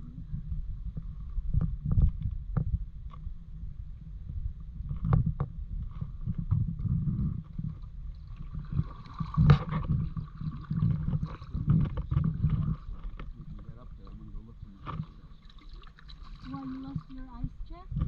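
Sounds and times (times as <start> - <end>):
low rumble: 0.0 - 15.5
water sloshing against hull: 0.1 - 18.0
paddle strokes splashing: 7.8 - 17.5.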